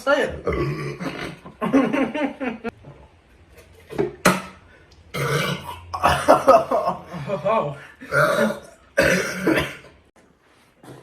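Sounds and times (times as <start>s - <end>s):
men burping: 0.4s - 1.7s, 5.1s - 10.0s.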